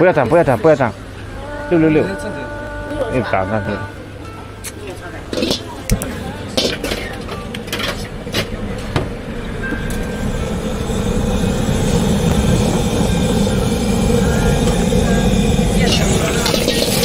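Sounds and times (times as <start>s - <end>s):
gas burner roaring: 5.3s - 17.0s.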